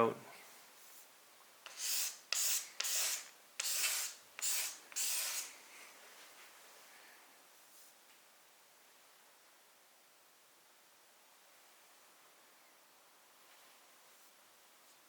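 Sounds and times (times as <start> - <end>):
rubbing on wooden cutting board: 1.7 - 5.5.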